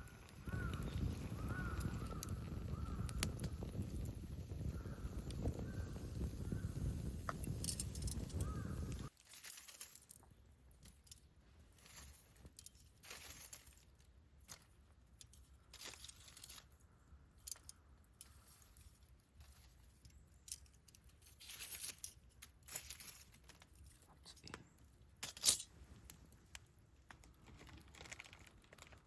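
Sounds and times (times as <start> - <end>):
campfire wood crackling: 0.0 - 29.0.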